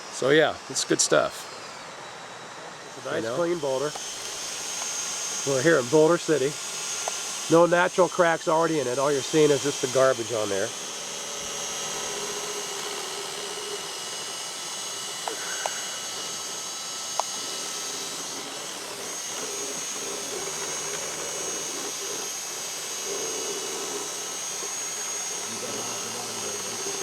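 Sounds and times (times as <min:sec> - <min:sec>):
power drill whining: 0:00.0 - 0:27.0.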